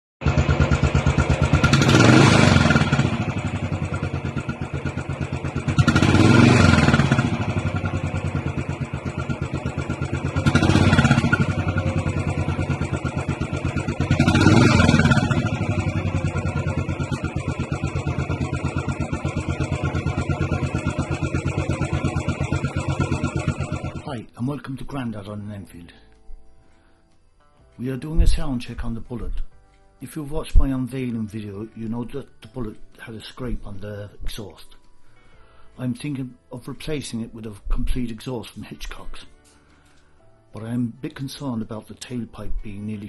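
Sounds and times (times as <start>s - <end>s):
motorcycle engine idling and revving: 0.2s - 24.1s.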